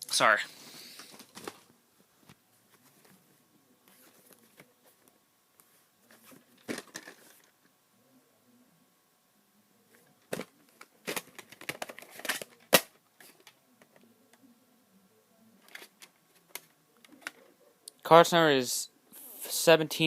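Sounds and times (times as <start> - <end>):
plastic tape cases clicking: 10.3 - 14.0.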